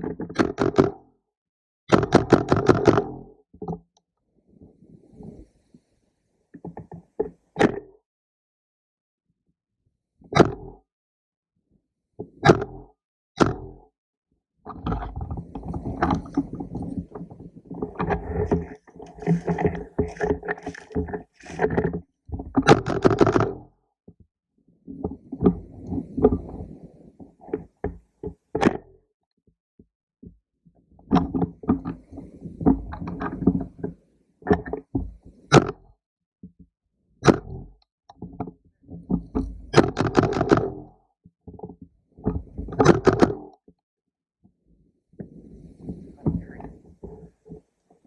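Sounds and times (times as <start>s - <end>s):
sharp knocks and clicks: 0.0s - 1.0s, 1.9s - 3.9s, 10.4s - 10.8s, 12.2s - 13.8s, 14.7s - 24.3s, 27.4s - 28.9s, 31.1s - 31.9s, 34.5s - 40.8s, 41.5s - 43.8s.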